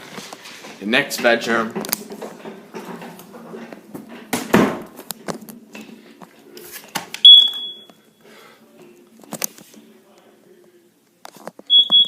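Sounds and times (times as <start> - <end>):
knocks and handling noises: 0.0 - 8.0, 11.2 - 12.0
high-pitched alarm beep: 7.3 - 7.9, 11.7 - 12.0.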